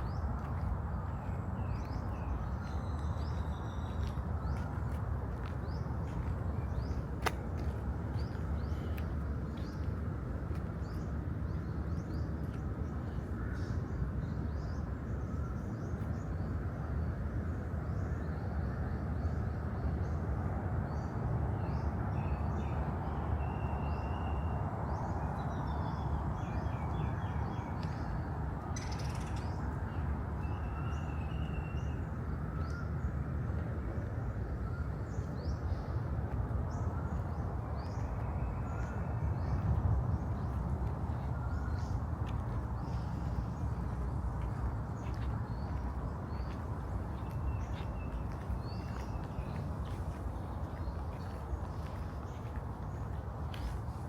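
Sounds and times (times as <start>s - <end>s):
steady low rumble: 0.0s - 17.8s, 31.9s - 54.0s
bird chirps: 28.7s - 29.6s
bird trills: 28.8s - 29.6s.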